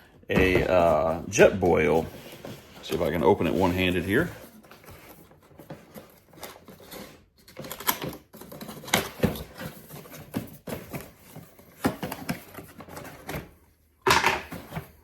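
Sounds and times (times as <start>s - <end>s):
packaging rustling and crinkling: 0.0s - 13.6s
packaging clicks and crackles: 2.8s - 13.4s.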